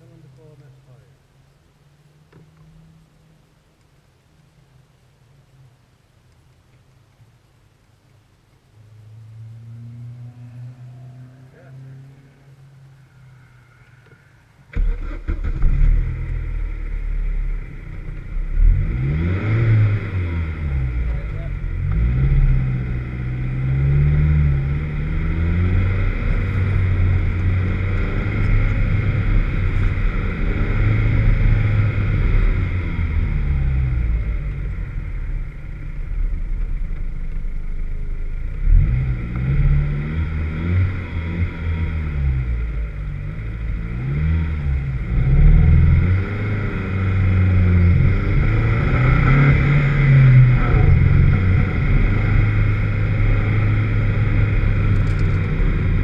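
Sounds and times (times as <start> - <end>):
car engine revving: 8.8 - 56.0
engine misfire: 14.7 - 16.2.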